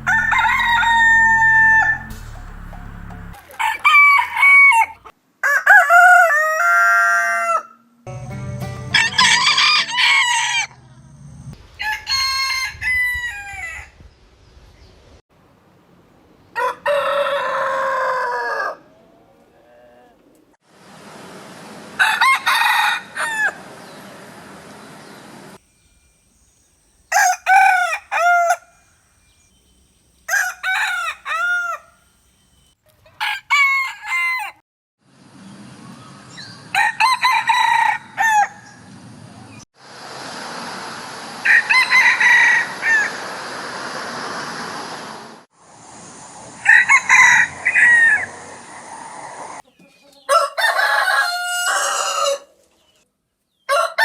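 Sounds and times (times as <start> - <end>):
roosters crowing: 0.0 - 7.8, 8.9 - 11.0, 11.7 - 14.0, 16.5 - 20.1, 22.0 - 24.1, 27.1 - 32.2, 33.1 - 34.6, 36.7 - 38.9, 41.4 - 43.5, 46.6 - 48.9, 50.3 - 52.6, 53.7 - 54.0.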